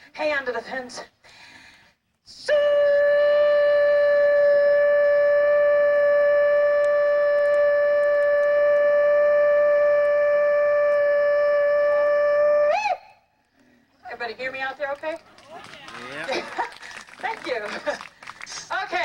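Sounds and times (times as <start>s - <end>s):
man's long held hog call: 2.7s - 13.2s.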